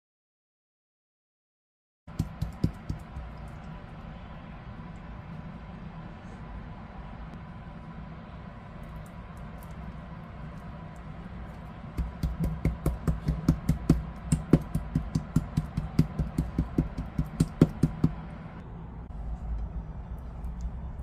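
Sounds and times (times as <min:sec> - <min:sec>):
rapid even knocking: 0:02.1 - 0:03.3, 0:12.0 - 0:18.2
low hum: 0:02.1 - 0:21.0.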